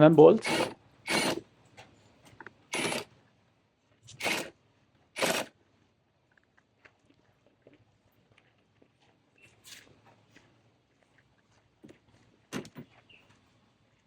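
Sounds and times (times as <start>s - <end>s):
ratchet wrench ratcheting: 0.4s - 1.4s, 2.7s - 3.1s, 4.2s - 4.5s, 5.2s - 5.5s.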